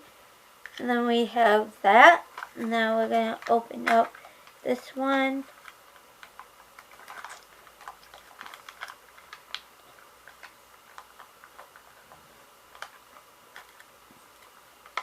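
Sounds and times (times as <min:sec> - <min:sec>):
plastic packaging crinkling: 0:05.4 - 0:15.0.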